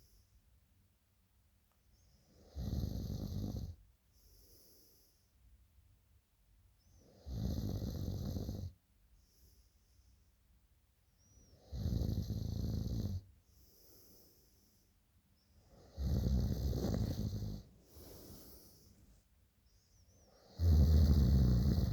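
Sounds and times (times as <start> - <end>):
soft breath out: 13.5 - 15.0, 17.0 - 20.2
person snoring: 15.8 - 18.8, 20.5 - 21.9.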